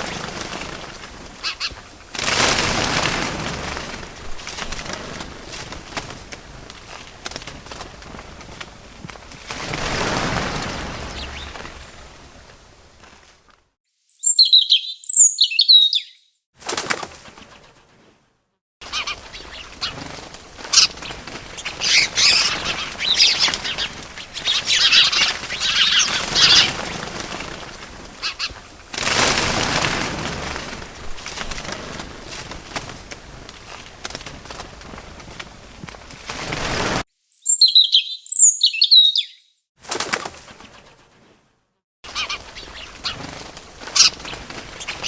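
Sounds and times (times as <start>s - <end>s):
birds wings flapping: 0.0s - 13.7s, 16.6s - 18.2s, 18.8s - 37.0s, 39.8s - 41.4s, 42.1s - 45.0s
rustling and fluttering: 0.0s - 13.8s, 16.6s - 37.1s, 39.8s - 45.0s
sharp high chirps: 14.0s - 16.2s, 37.2s - 39.4s.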